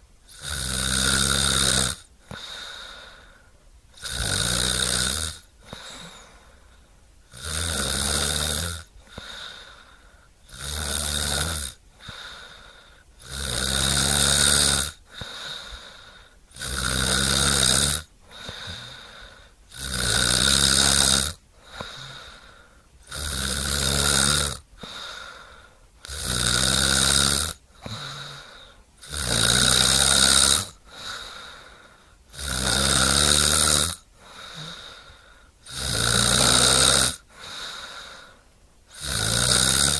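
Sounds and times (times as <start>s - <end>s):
loud rattling snore: 0.3s - 2.1s, 4.0s - 6.3s, 7.3s - 9.4s, 10.5s - 12.3s, 13.2s - 15.4s, 16.5s - 19.0s, 19.7s - 22.3s, 23.0s - 24.6s, 26.0s - 28.4s, 29.0s - 31.1s, 32.3s - 35.0s, 35.6s - 37.3s, 38.9s - 39.9s
quiet breathing: 2.0s - 4.4s, 5.4s - 11.0s, 11.7s - 13.6s, 14.8s - 16.8s, 18.0s - 19.8s, 21.3s - 23.3s, 24.6s - 26.2s, 27.5s - 29.0s, 30.0s - 32.4s, 33.8s - 36.5s, 37.1s - 39.1s.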